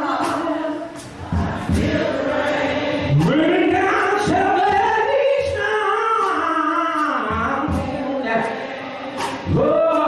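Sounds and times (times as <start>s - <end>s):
choir singing gospel: 0.0s - 10.0s.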